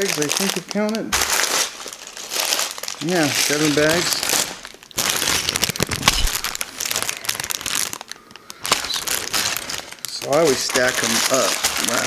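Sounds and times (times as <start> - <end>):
plastic bags crinkling: 0.0 - 12.0
bag knocking down: 5.9 - 6.7.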